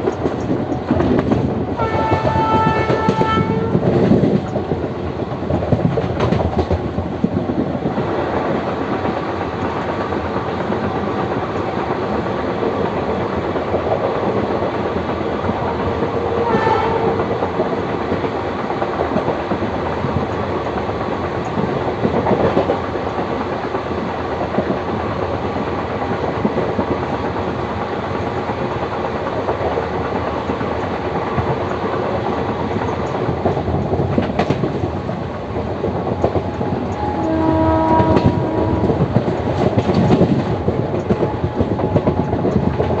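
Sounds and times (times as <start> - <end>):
train wheels rumbling and clattering: 0.0 - 43.0
locomotive horn: 1.8 - 3.8, 16.4 - 17.2, 36.9 - 39.0.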